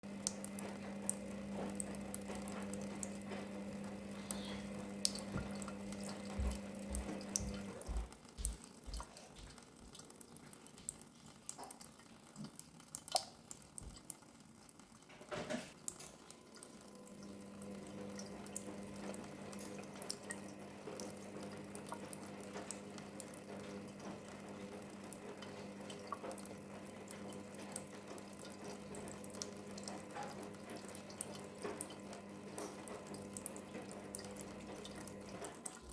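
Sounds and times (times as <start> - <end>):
water trickling: 0.0 - 15.1, 15.7 - 35.9
cat lapping water: 0.2 - 14.2.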